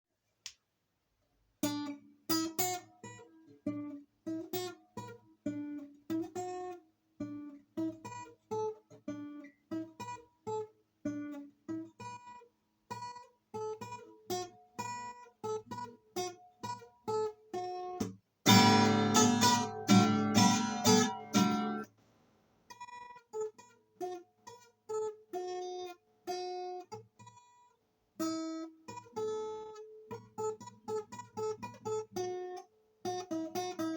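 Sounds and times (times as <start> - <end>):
guitar picked notes: 18.5 - 21.9
guitar strummed chords: 18.5 - 21.9.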